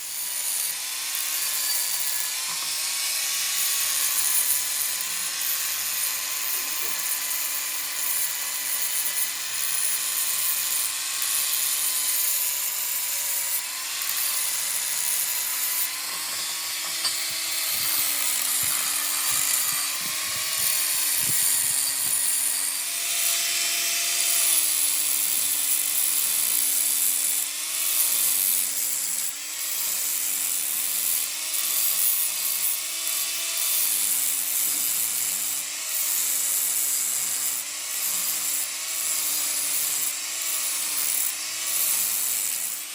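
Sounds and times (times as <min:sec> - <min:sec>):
power tool working metal: 0:00.0 - 0:42.9.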